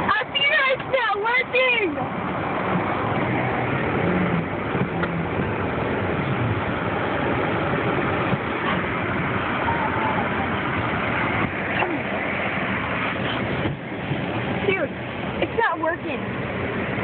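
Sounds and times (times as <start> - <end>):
car engine with wheels spinning: 2.1 - 15.4.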